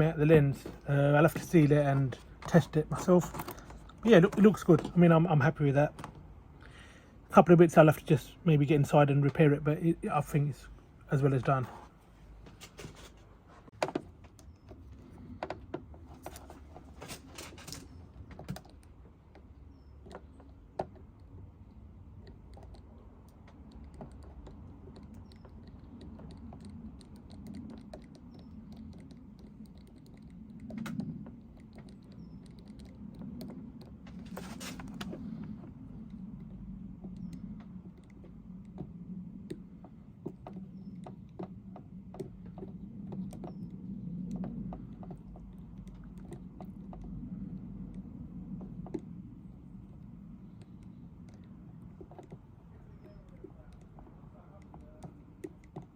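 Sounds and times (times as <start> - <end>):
low steady hum: 0.0 - 55.9
tools and plastic parts clicking: 2.2 - 5.0.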